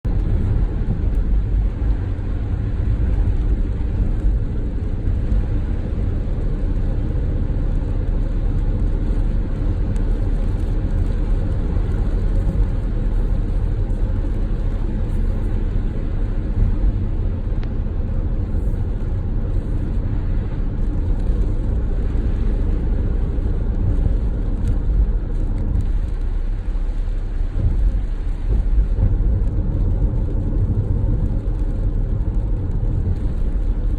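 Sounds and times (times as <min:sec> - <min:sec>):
car road and engine rumble: 0:00.0 - 0:33.9.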